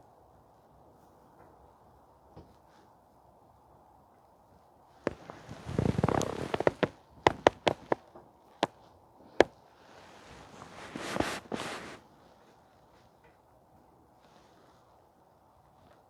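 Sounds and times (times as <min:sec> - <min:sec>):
rustling: 0:05.1 - 0:08.0, 0:09.4 - 0:12.6
sharp clicks and knocks: 0:05.1 - 0:08.0.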